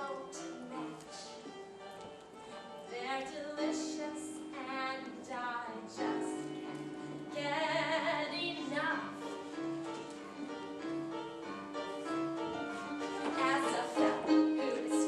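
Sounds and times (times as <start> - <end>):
woman singing: 0.0 - 1.4, 2.8 - 6.6, 7.3 - 9.2, 13.2 - 15.0
instrumental accompaniment: 0.0 - 15.0.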